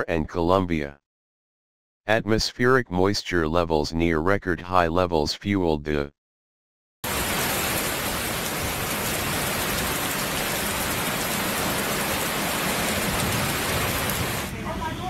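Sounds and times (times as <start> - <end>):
heavy rain pouring: 7.0 - 14.8.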